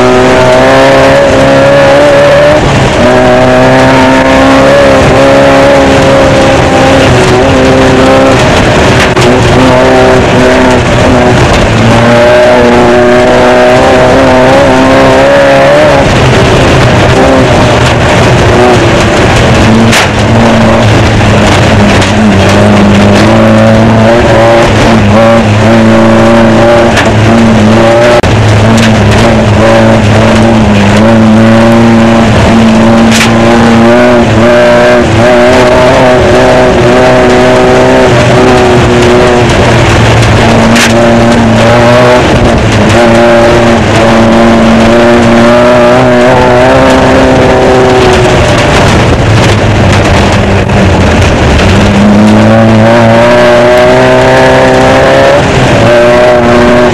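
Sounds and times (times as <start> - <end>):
race car engine running hard: 0.0 - 56.9
road and wind noise: 0.0 - 56.9.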